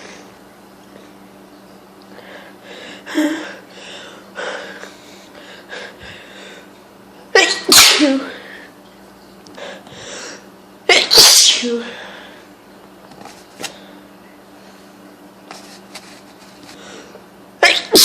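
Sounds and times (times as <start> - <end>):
woman sneezing: 7.4 - 8.4, 10.9 - 12.0, 17.6 - 18.0.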